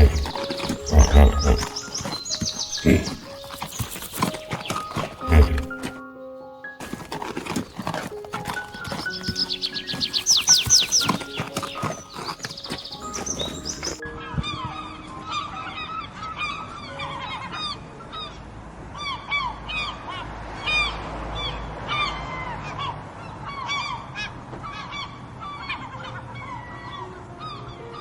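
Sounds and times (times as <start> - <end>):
flock of birds calling: 0.0 - 6.0, 6.8 - 14.0.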